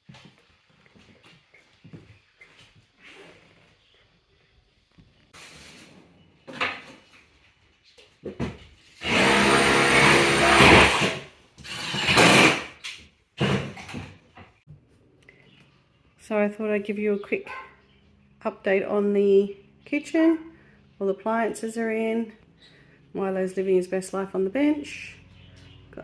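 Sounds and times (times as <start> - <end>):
power tool motor humming: 9.0 - 12.7.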